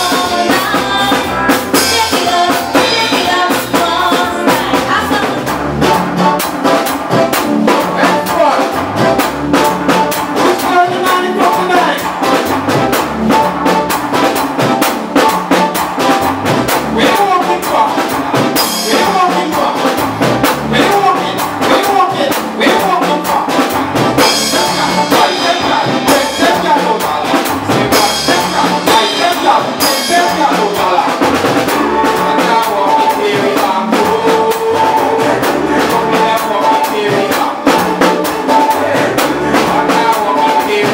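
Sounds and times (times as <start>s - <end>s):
band playing: 0.0s - 40.9s
drum kit fast beat: 0.0s - 40.9s.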